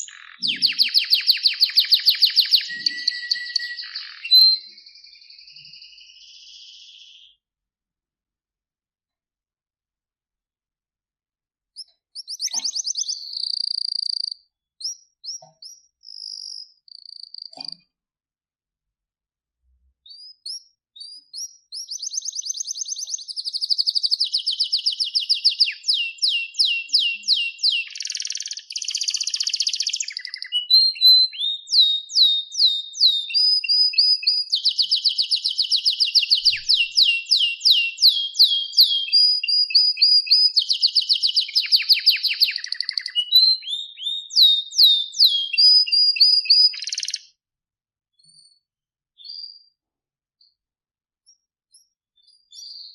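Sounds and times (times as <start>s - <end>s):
canary singing trills: 0.0s - 7.4s, 11.8s - 17.8s, 20.1s - 47.3s, 51.3s - 52.9s.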